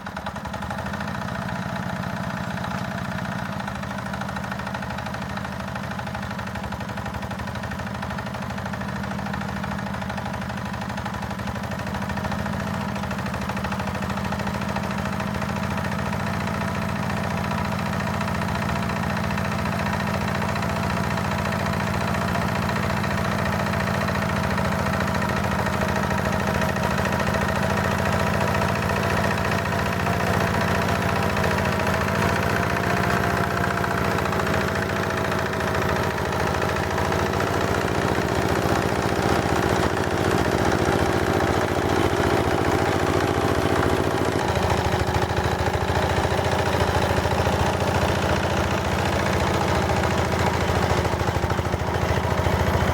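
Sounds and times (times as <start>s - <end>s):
tractor engine running: 0.0s - 52.9s
rotary tiller cutting sod: 14.0s - 52.9s.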